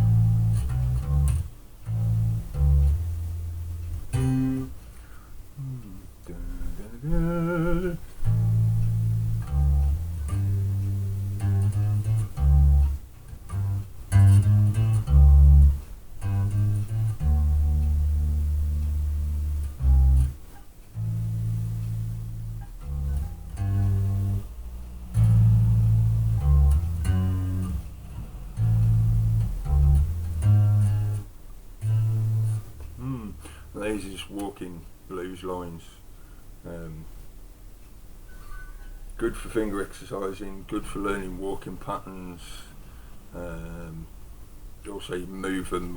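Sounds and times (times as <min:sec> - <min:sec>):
electric bass walking blues line: 0:00.0 - 0:35.5.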